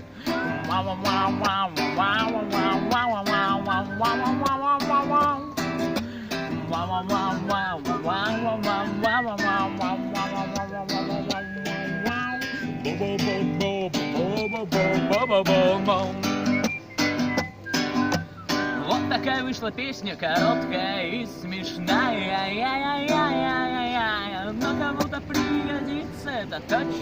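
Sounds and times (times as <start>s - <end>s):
man whistling melody: 0.0s - 19.7s
acoustic guitar strumming: 0.0s - 27.0s.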